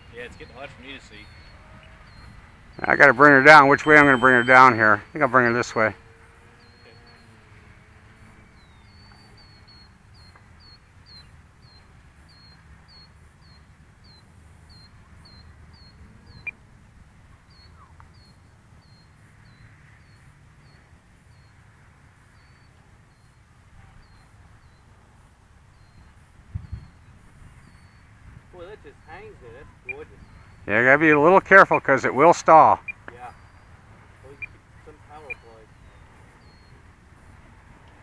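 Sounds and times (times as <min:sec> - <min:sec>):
small animal chirping: 0:29.6 - 0:30.6, 0:32.8 - 0:34.6, 0:35.2 - 0:35.6.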